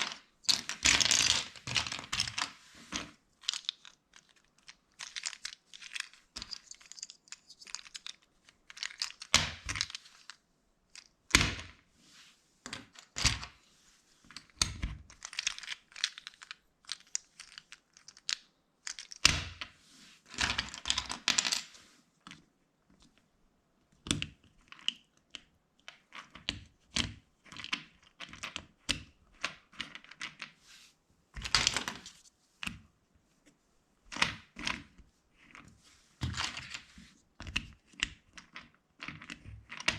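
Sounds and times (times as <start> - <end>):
loose plastic pieces rattling: 0.0 - 11.2, 14.4 - 19.3
plastic bricks clicking together: 3.4 - 11.6, 14.4 - 19.4.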